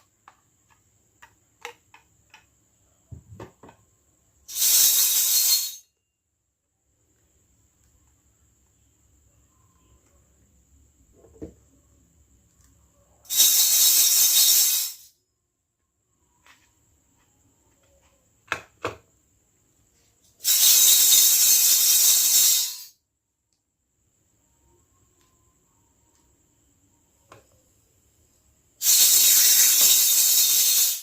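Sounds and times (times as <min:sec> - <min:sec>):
loud hisses: 0:04.5 - 0:05.7, 0:13.3 - 0:15.1, 0:20.4 - 0:22.9, 0:28.8 - 0:31.0.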